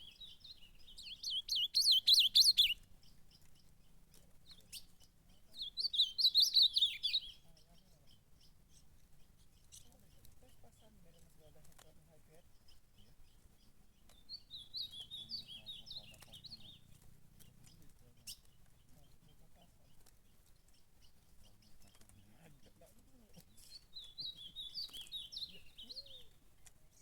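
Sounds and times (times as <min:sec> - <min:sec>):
bird warbling song: 0:00.0 - 0:27.0
faint clicks: 0:09.4 - 0:12.0, 0:13.3 - 0:14.2, 0:19.9 - 0:20.8, 0:21.4 - 0:22.3, 0:25.8 - 0:27.0.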